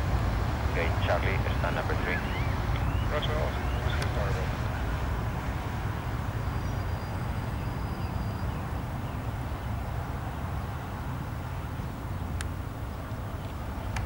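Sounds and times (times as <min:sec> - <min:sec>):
jet engines rumbling: 0:00.0 - 0:14.0.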